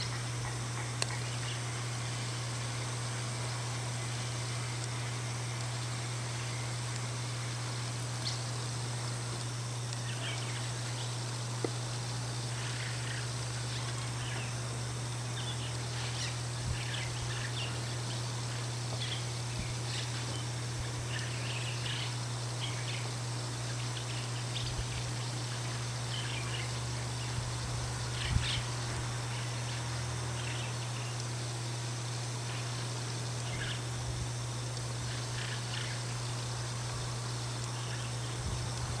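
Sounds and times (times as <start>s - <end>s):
steady low hum: 0.0s - 39.0s
starling chirps and squeaks: 15.4s - 20.4s, 21.0s - 23.0s, 28.1s - 29.8s, 33.5s - 33.8s, 35.1s - 36.0s.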